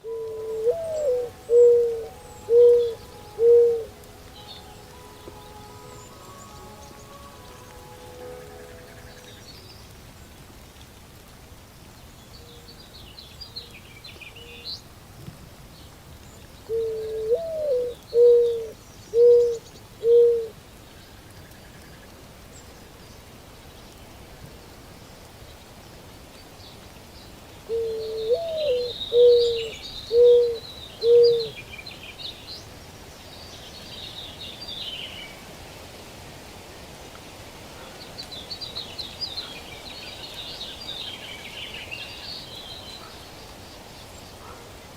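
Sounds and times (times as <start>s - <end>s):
dove cooing: 0.0s - 5.8s, 16.7s - 20.6s, 27.7s - 31.6s
songbirds chirping faintly: 0.0s - 35.9s, 36.6s - 44.9s.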